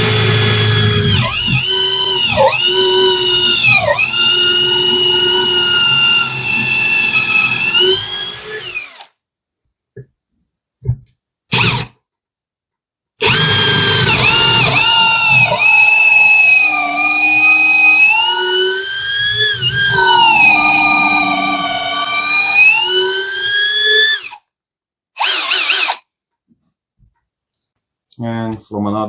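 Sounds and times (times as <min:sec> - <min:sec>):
cordless drill whining: 0:00.0 - 0:09.2, 0:11.5 - 0:11.9, 0:13.2 - 0:24.4, 0:25.2 - 0:26.0.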